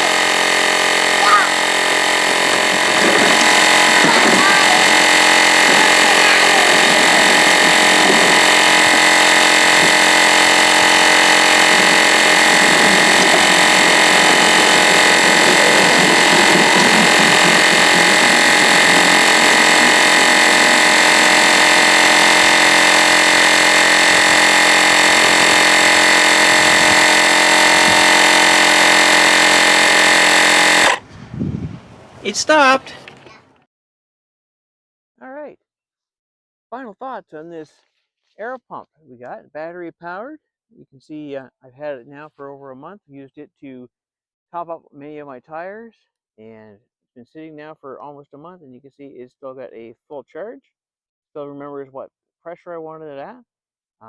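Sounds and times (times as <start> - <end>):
air compressor running: 0.0 - 33.4.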